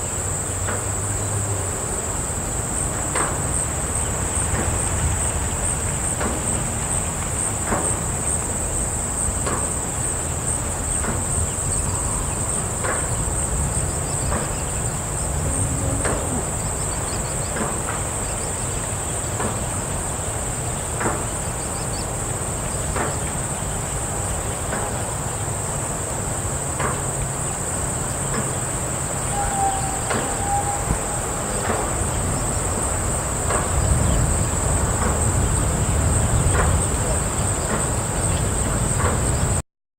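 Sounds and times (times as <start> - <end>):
high-pitched insect chorus: 0.0 - 39.6
faint knocks: 11.0 - 20.1
low rumble: 11.4 - 19.2
short whistle-like call: 29.2 - 32.0.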